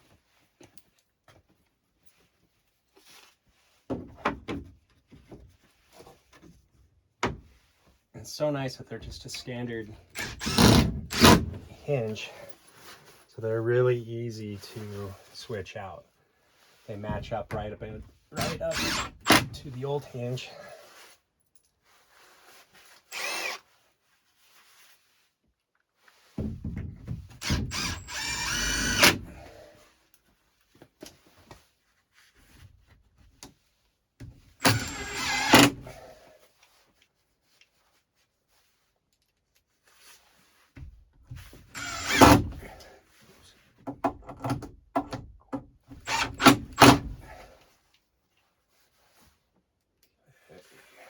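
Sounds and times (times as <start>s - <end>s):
cordless drill motor whine: 10.2s - 11.3s, 18.4s - 19.4s, 23.1s - 23.6s, 27.4s - 29.4s, 34.6s - 35.9s, 41.7s - 42.4s, 46.0s - 46.9s.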